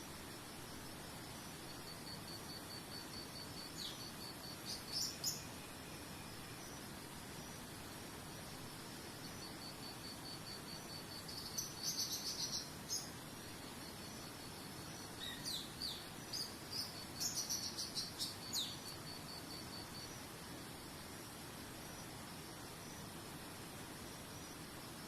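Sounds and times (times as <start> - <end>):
background hiss: 0.0 - 25.0
pulsing high insect trill: 0.1 - 25.0
small birds chirping: 1.8 - 5.6, 10.2 - 20.3.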